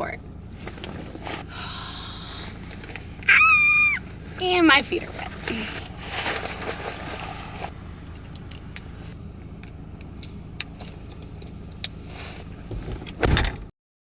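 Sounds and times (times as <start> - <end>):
car engine idling: 0.0 - 13.2.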